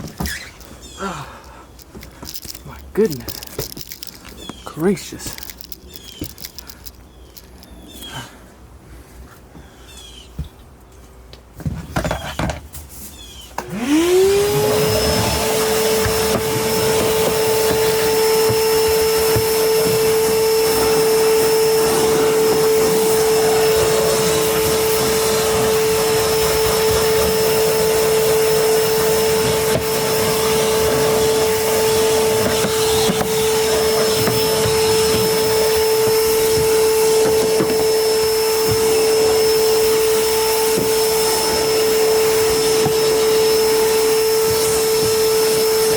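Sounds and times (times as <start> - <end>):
vacuum cleaner motor whining: 0.0 - 1.2, 13.6 - 45.9.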